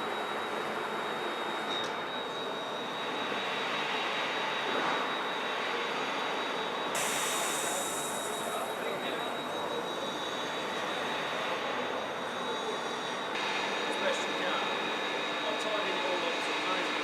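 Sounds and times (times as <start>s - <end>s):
milling machine running with whine: 0.0s - 17.0s
sharp high hiss: 6.9s - 8.6s.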